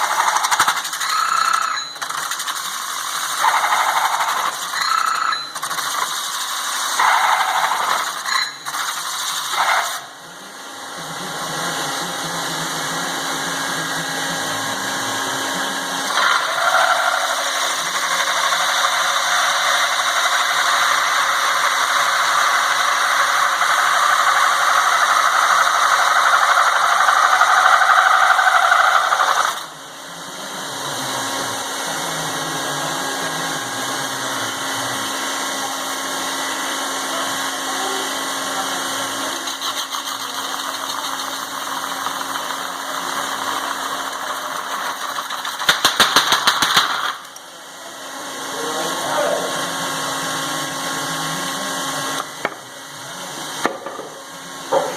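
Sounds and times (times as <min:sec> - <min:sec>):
tool scraping spinning sheet metal: 0:00.0 - 0:10.2, 0:14.4 - 0:29.7, 0:37.8 - 0:47.3
lathe machine hum: 0:02.6 - 0:45.6, 0:47.2 - 0:54.9.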